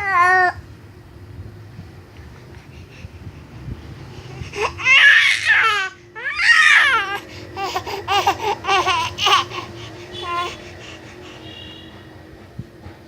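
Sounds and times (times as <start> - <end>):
baby crying: 4.5 - 10.8.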